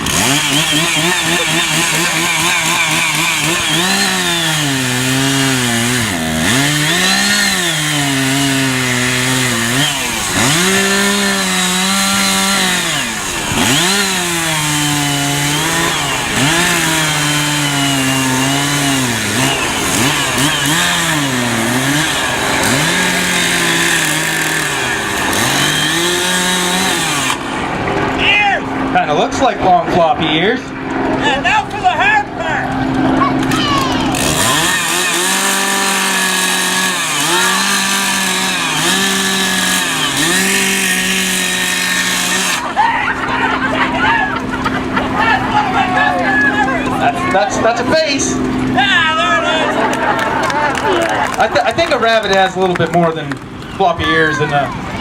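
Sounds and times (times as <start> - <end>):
chainsaw cutting wood: 0.0 - 28.1, 32.7 - 42.8.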